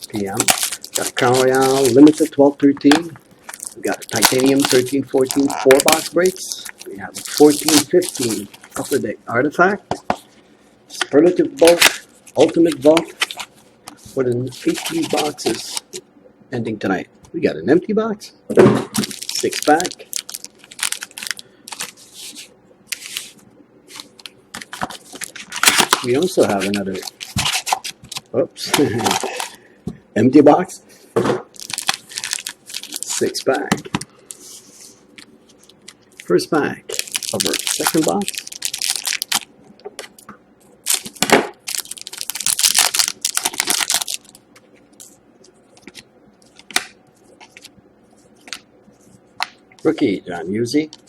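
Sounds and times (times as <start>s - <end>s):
wrapper tearing and crinkling: 0.0s - 2.4s, 3.4s - 9.0s, 14.4s - 16.0s, 19.0s - 29.6s, 31.5s - 33.6s, 36.9s - 39.5s, 40.8s - 45.2s
cards and packaging rustling: 0.0s - 9.1s, 11.6s - 16.0s, 19.0s - 29.6s, 31.5s - 36.3s, 36.9s - 40.2s, 40.8s - 50.0s.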